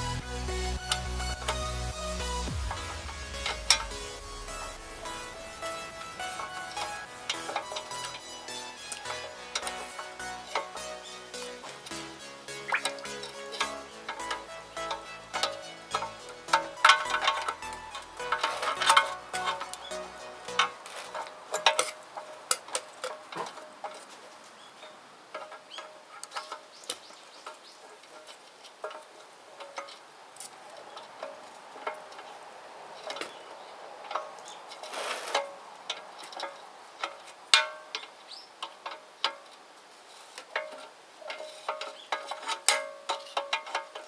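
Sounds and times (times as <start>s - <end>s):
metal tools clinking: 0.0s - 44.0s.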